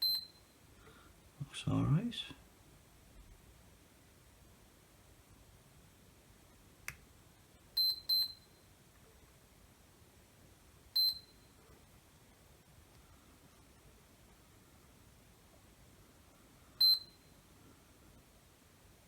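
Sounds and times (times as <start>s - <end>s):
multimeter short high beeps: 0.0s - 0.5s, 7.8s - 8.6s, 11.0s - 11.5s, 16.8s - 17.4s.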